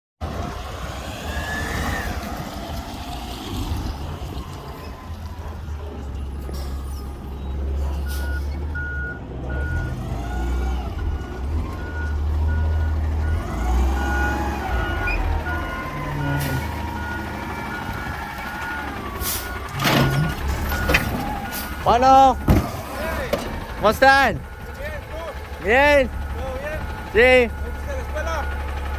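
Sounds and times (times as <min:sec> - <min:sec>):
garbage truck engine running: 0:01.8 - 0:28.9
backup alarm beeping: 0:07.0 - 0:22.7.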